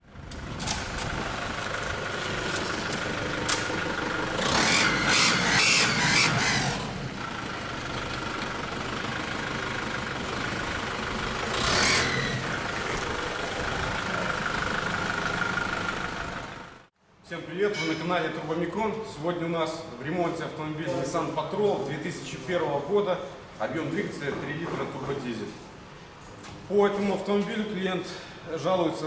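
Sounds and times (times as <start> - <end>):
diesel engine running: 0.0 - 16.9.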